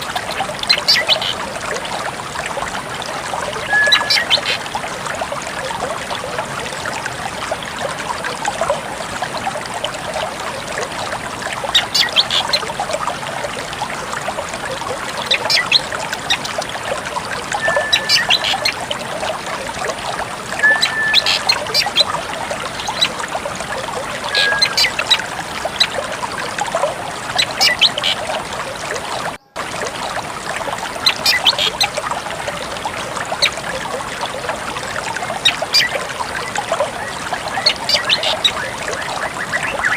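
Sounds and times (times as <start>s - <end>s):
trickle of running water: 0.0s - 39.9s
bird calls with sharp notes: 3.6s - 4.6s, 17.6s - 18.8s, 20.6s - 22.0s, 24.3s - 25.2s
brief bird whistle: 3.7s - 4.2s, 17.6s - 18.2s, 20.6s - 21.4s.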